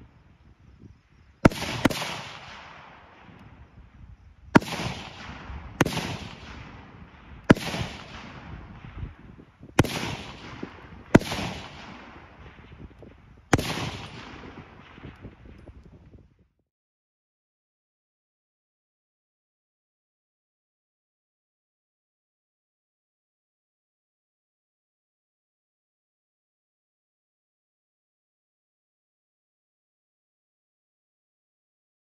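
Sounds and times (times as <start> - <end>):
rifle shots with echo: 1.4 - 15.8.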